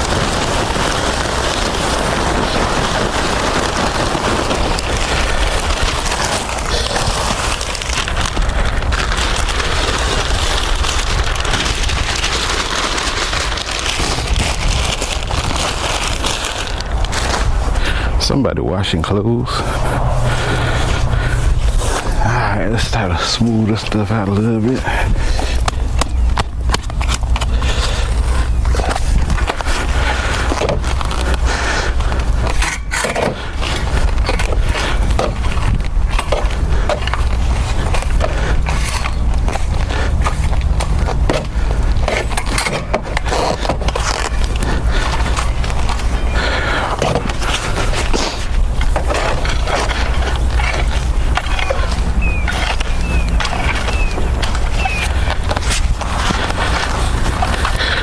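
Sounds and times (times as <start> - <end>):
rake scraping wood mulch: 0.0 - 58.0
low rumble: 14.3 - 30.1
bird chirping: 51.6 - 55.2.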